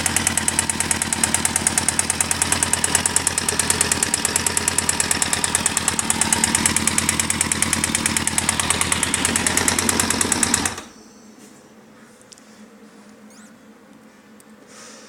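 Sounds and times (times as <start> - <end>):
engine running with rapid knock: 0.0 - 11.0.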